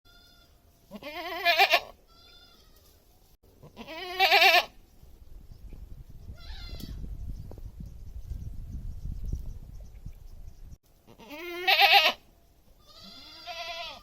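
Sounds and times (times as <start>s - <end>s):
goat bleating: 0.1s - 2.9s, 3.6s - 4.8s, 6.4s - 7.0s, 11.1s - 12.2s, 12.8s - 14.0s.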